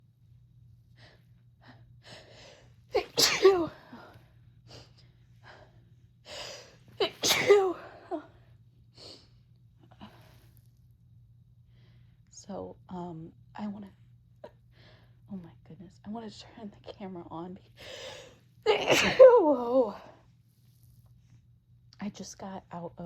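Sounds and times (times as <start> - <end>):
woman sneezing: 3.0 - 3.9, 7.0 - 8.2, 18.7 - 20.0.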